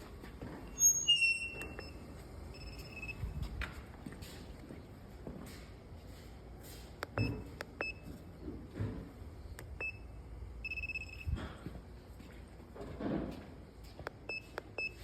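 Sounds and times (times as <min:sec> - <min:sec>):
short electronic beeps: 0:00.8 - 0:03.4, 0:09.8 - 0:11.4.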